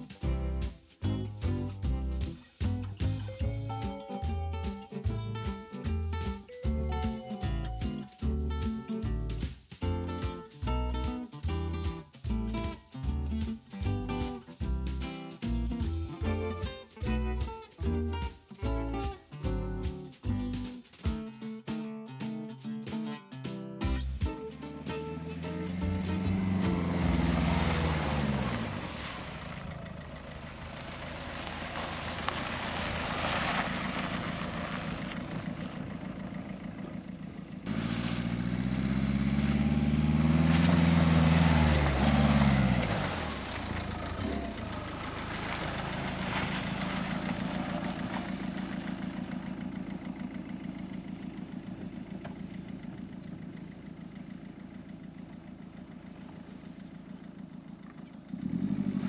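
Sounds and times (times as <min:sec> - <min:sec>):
vehicle engine running: 0:00.0 - 0:21.2, 0:23.7 - 0:59.0
engine revving: 0:24.2 - 0:30.4, 0:37.6 - 0:49.4, 0:58.3 - 0:59.0.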